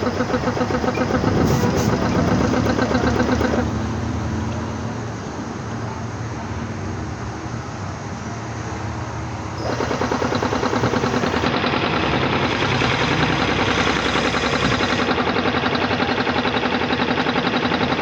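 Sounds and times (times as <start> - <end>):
steady hum: 0.0 - 4.0, 9.6 - 15.3
air compressor knocking: 0.0 - 4.2, 9.6 - 18.0.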